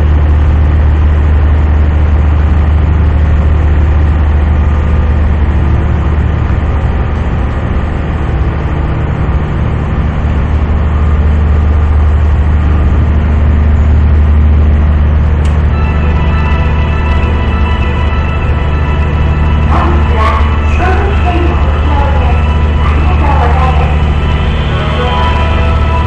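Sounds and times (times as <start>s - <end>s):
ferry engines droning: 0.0s - 26.0s
music: 15.4s - 26.0s.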